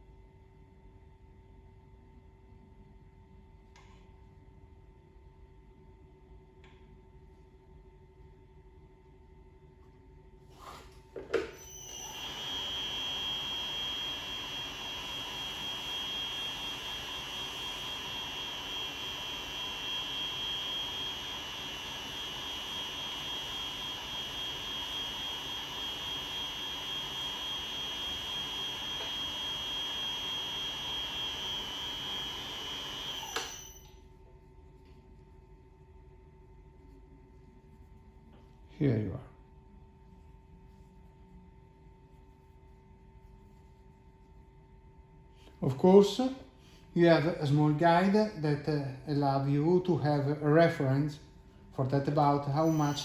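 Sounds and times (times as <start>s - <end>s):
fabric machine high-pitched whine: 10.6s - 34.0s, 51.8s - 53.0s.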